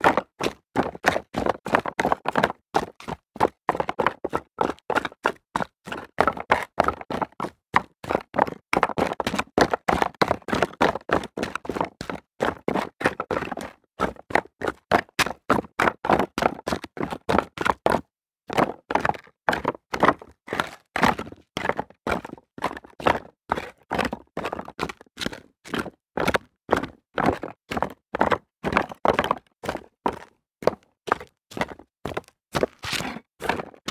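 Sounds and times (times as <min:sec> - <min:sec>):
footsteps running on rocks: 0:32.6 - 0:33.2.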